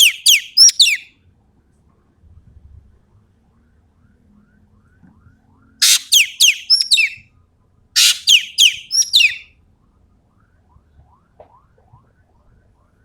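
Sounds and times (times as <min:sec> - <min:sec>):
bird song with whistled notes: 0:00.0 - 0:01.1, 0:05.8 - 0:07.3, 0:08.0 - 0:09.5.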